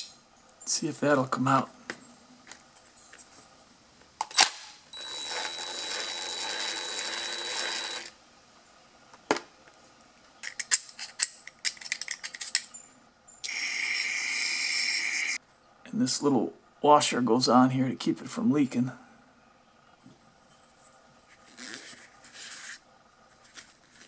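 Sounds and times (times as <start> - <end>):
small metal parts clinking: 10.4 - 12.8
aerosol spray hiss: 13.5 - 15.4.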